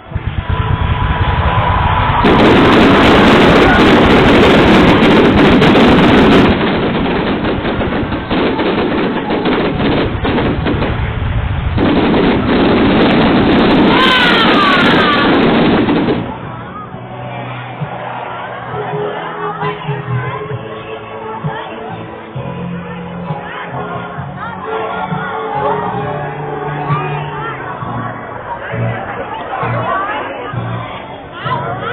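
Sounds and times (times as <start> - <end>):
fireworks crackling bangs: 0.0 - 16.8.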